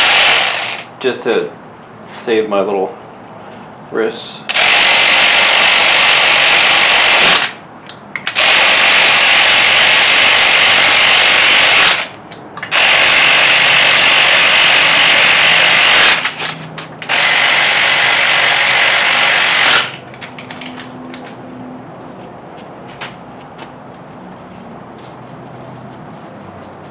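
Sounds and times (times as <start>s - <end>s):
power driver spinning bolts: 8.2s - 21.2s.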